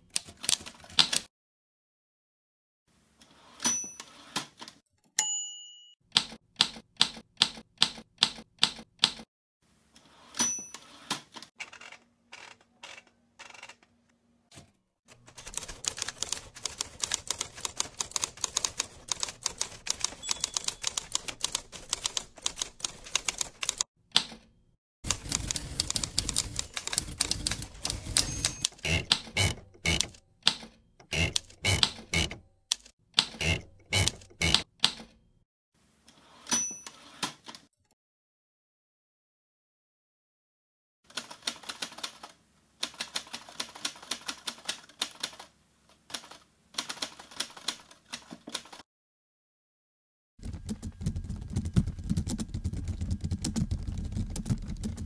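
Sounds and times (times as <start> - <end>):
typewriter carriage bell: 20.0 - 21.4, 25.1 - 28.7, 36.5 - 37.2.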